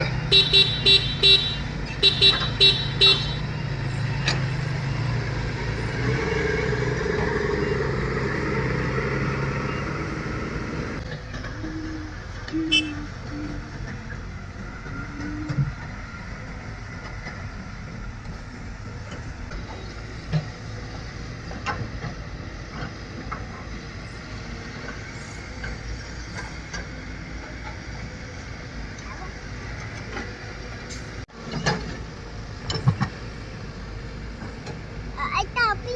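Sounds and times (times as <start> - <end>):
vehicle horn honks: 0.3 - 3.5, 12.7 - 13.0.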